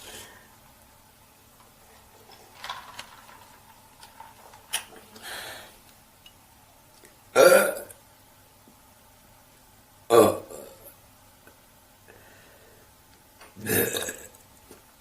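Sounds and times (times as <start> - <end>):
soft breath: 0.0 - 0.6, 5.1 - 5.8, 12.1 - 13.0
woman burping: 7.4 - 8.0, 13.6 - 14.4.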